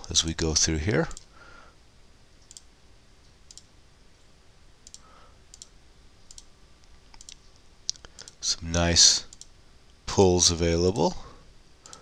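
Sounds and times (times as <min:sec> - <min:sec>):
computer mouse clicks: 0:02.4 - 0:02.7, 0:03.5 - 0:03.7, 0:04.8 - 0:08.4, 0:09.3 - 0:09.6.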